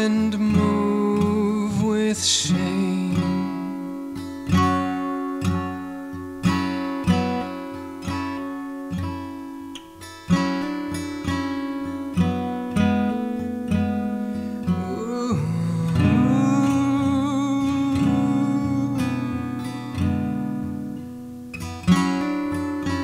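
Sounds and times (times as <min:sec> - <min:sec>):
acoustic guitar strumming: 0:00.0 - 0:23.0.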